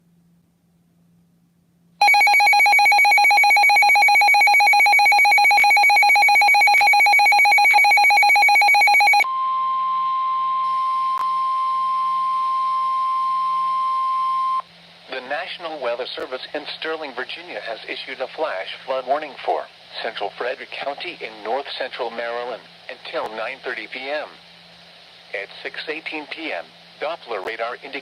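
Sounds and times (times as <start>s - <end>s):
pulsing two-tone attention signal: 2.0s - 10.8s
steady single warning tone: 2.0s - 14.7s.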